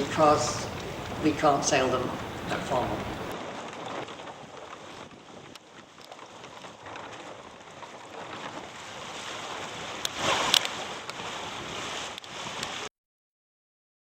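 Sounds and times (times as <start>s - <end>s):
wind rushing: 0.0s - 3.3s
water rushing around boat: 0.0s - 12.9s.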